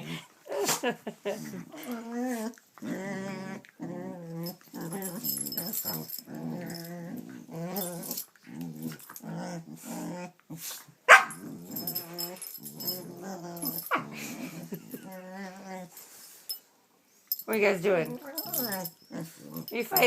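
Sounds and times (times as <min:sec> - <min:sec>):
dog grumbling: 0:01.2 - 0:10.4
dog barking: 0:11.1 - 0:11.4.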